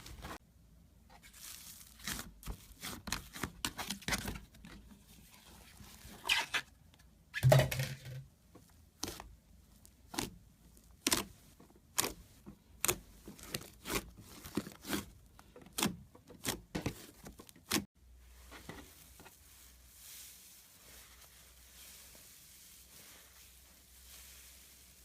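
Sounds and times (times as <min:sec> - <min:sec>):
slime squishing softly: 0:08.5 - 0:25.0.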